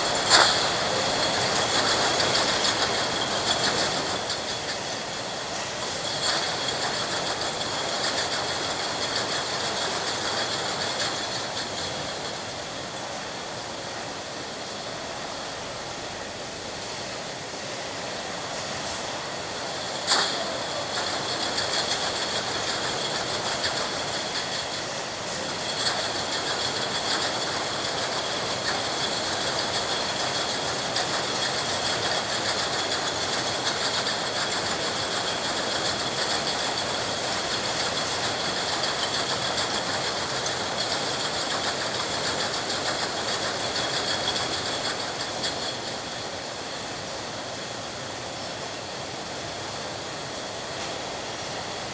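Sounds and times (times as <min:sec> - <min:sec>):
machinery clatter: 0:00.0 - 0:13.0, 0:19.6 - 0:47.7.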